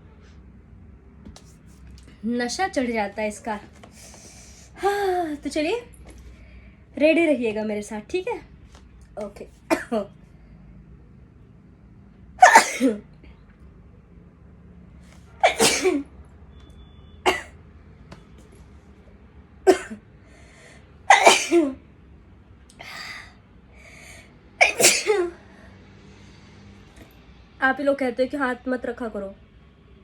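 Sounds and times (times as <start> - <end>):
woman sneezing: 12.4 - 13.0, 15.4 - 16.1, 21.1 - 21.8, 24.6 - 25.4.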